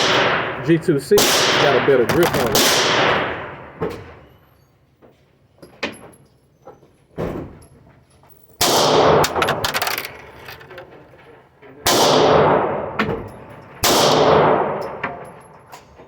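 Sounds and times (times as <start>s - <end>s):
gunshots with long echo: 0.0s - 3.8s, 8.6s - 9.6s, 11.8s - 13.1s, 13.7s - 15.3s.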